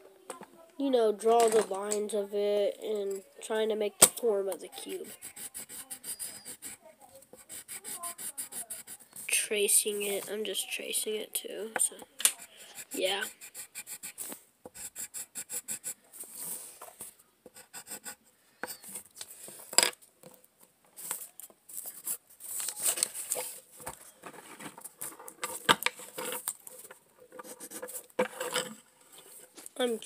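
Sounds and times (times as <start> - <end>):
pencil scratching on paper: 4.9 - 10.2, 12.3 - 16.6, 17.5 - 19.0, 27.3 - 28.5.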